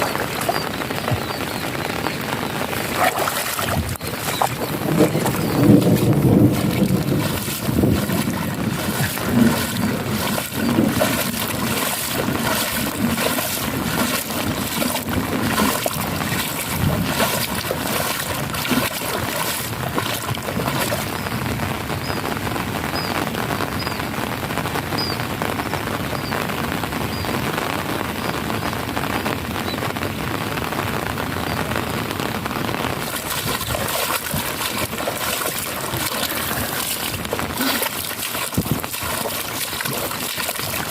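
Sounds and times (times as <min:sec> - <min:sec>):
trickling water: 0:00.0 - 0:22.4, 0:32.9 - 0:40.9
rain falling: 0:00.0 - 0:40.9.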